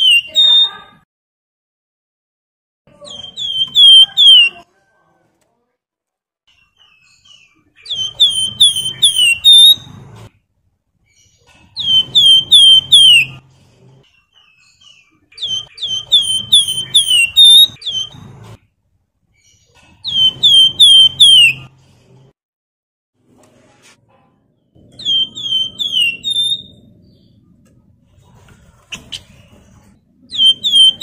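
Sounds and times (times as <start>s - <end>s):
bird whistled song: 0.0s - 0.9s, 3.1s - 4.6s, 6.8s - 9.9s, 11.8s - 13.4s, 14.4s - 18.2s, 20.0s - 21.7s, 25.0s - 27.2s, 30.3s - 31.0s.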